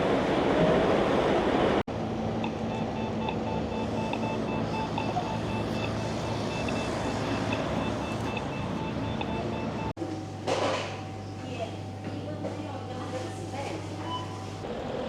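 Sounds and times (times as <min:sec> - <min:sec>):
moving vehicle rumble: 0:01.9 - 0:10.0
faint repeating tones: 0:02.4 - 0:10.0.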